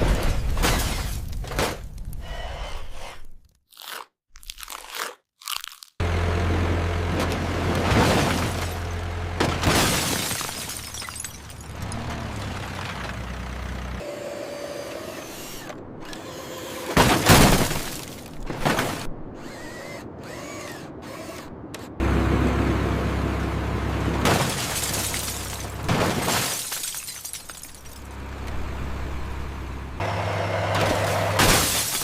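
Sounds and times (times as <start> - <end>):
model cars being crushed: 7.2 - 12.1, 16.9 - 19.1, 24.2 - 28.1, 30.7 - 32.0.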